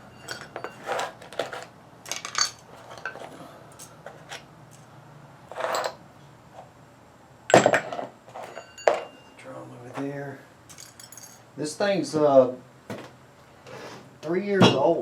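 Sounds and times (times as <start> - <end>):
metal tools clinking on workbench: 0.0 - 4.9, 5.5 - 6.0, 7.5 - 9.4, 10.7 - 11.5.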